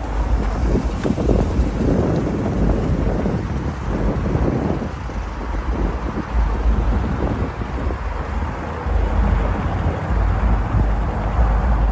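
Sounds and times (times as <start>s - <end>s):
car engine rumbling: 0.0s - 11.9s
wind buffeting microphone: 0.0s - 11.9s.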